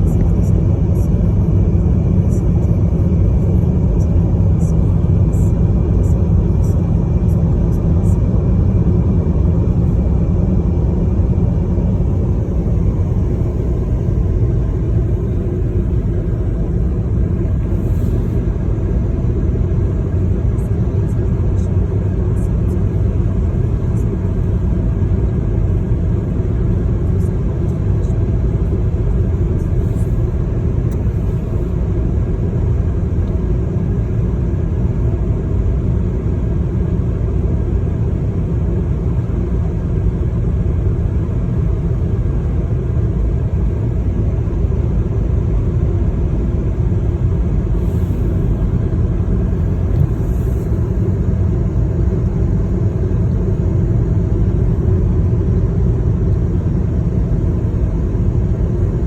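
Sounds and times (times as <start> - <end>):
car road and engine rumble: 0.0 - 59.0.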